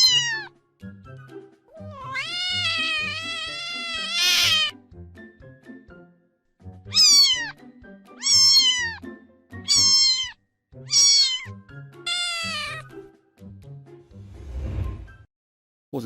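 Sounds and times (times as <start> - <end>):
cat meowing: 0.0 - 0.6, 1.7 - 4.8, 6.9 - 7.6, 8.2 - 12.9.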